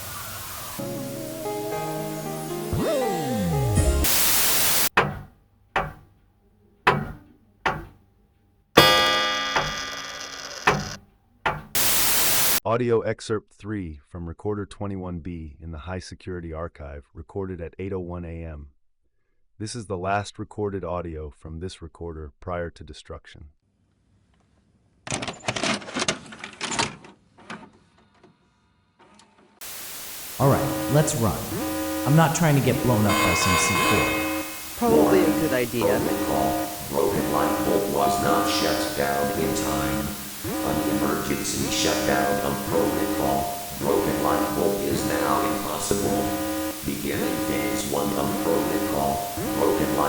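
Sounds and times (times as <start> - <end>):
radio static burst: 2.7 - 4.9, 11.8 - 12.6, 29.6 - 50.0
dull thuds: 6.9 - 8.0.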